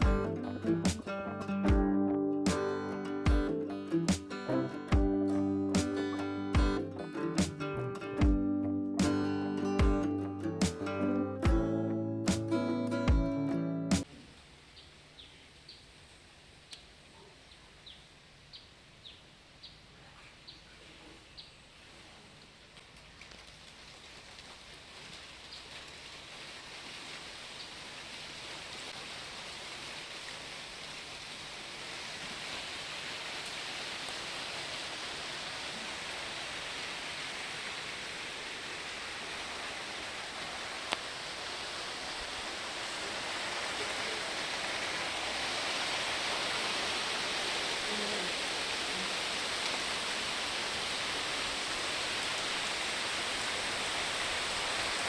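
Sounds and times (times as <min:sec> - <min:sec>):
steady hiss: 0:02.5 - 0:08.0, 0:24.8 - 0:55.0.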